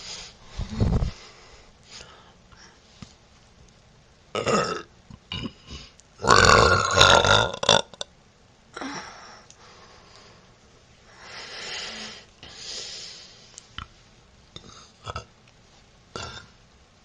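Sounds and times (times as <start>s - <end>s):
woman burping: 4.4s - 5.6s, 6.2s - 8.0s.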